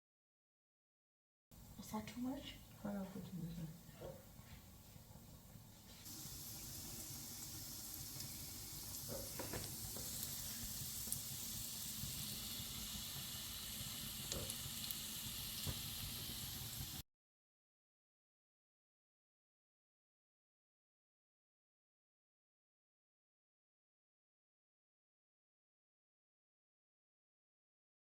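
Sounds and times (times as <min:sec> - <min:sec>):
food sizzling in frying pan: 0:05.9 - 0:17.0.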